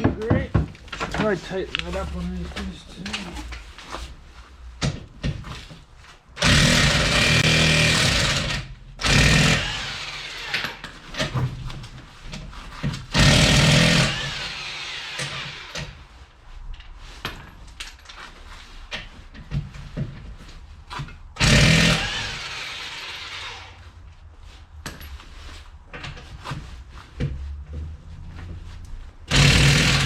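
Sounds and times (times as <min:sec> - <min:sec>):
impact wrench bursts: 0:06.4 - 0:11.3, 0:13.1 - 0:16.0, 0:21.4 - 0:23.8, 0:29.3 - 0:30.0.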